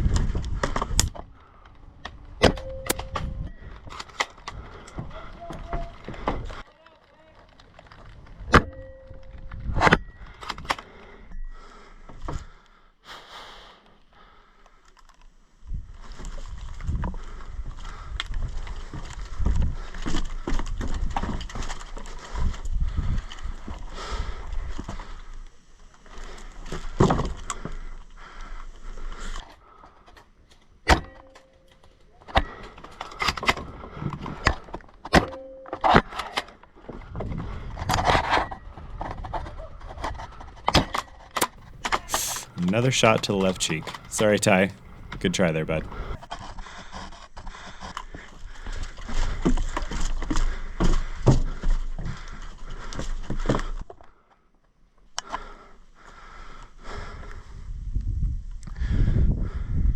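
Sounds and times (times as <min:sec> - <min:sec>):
wind rumble on microphone: 0:57.7 - 0:59.9.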